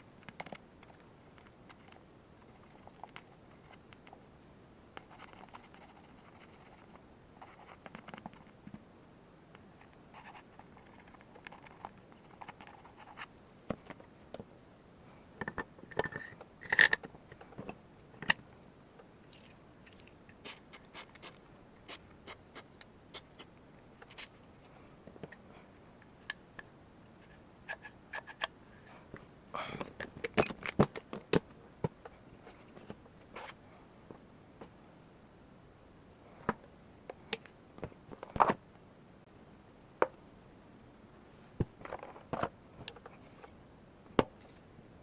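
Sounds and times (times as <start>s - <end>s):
small parts clicking and tapping: 15.4s - 18.4s.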